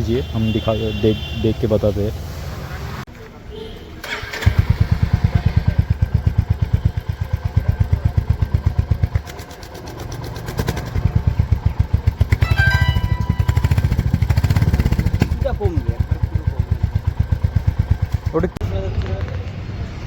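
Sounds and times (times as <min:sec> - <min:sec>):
motorcycle engine idling: 0:04.5 - 0:19.2.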